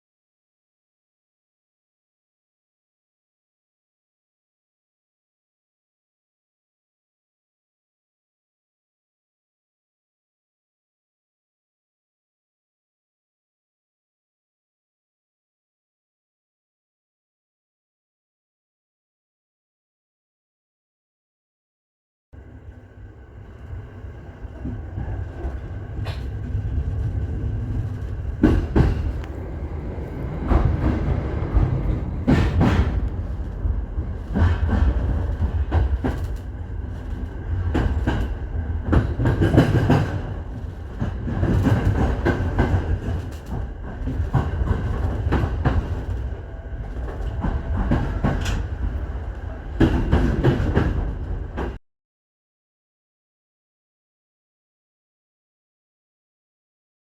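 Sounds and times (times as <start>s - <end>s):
train rumble: 22.4s - 51.8s.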